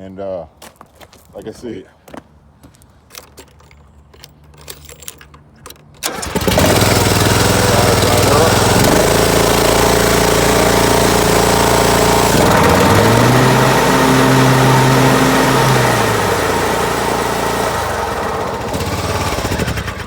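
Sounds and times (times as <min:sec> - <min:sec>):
mower engine revving: 0:06.0 - 0:20.0.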